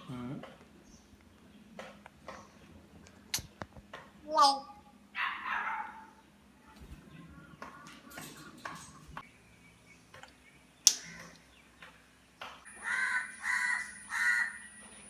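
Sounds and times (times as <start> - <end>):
parrot squawk: 12.8 - 14.7.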